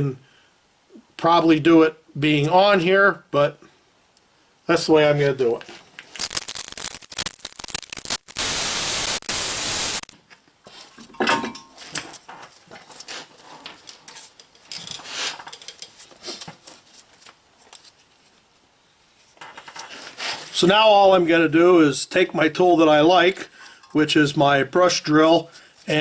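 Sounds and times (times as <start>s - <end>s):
power tool running: 6.2s - 10.1s.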